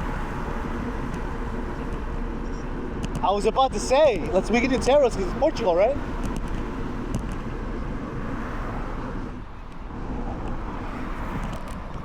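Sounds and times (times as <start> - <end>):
road traffic passing: 0.0 - 12.0.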